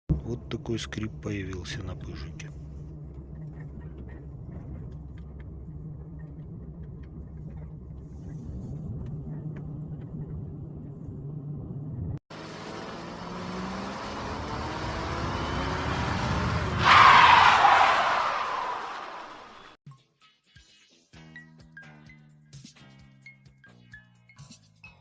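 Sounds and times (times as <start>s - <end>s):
car engine and road rumble: 0.1s - 19.8s.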